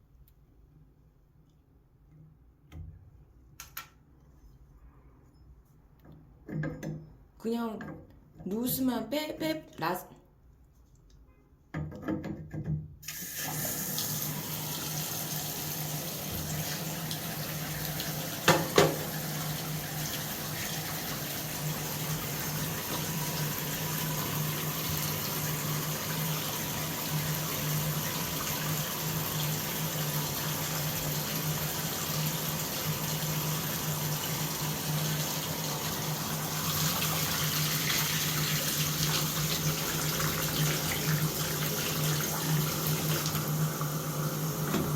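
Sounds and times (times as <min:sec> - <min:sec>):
shower water running: 0:13.0 - 0:44.9.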